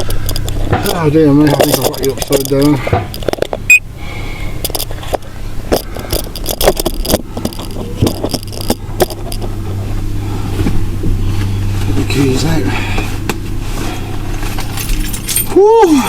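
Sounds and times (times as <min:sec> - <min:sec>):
handling clicks and knocks: 0:00.0 - 0:03.9, 0:04.6 - 0:09.7
low steady hum: 0:00.0 - 0:16.0
keys jangling: 0:14.5 - 0:15.8.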